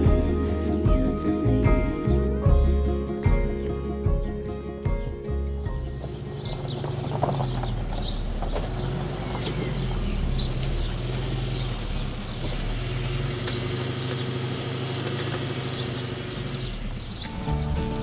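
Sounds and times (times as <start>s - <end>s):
held bass line: 0.0s - 6.8s, 17.3s - 18.0s.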